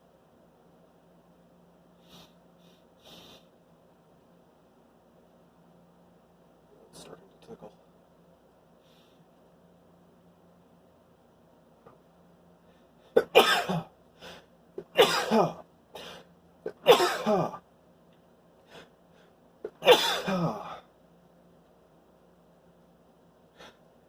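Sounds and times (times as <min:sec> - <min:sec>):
short breaths: 0:02.0 - 0:03.5
man sneezing: 0:19.7 - 0:20.8.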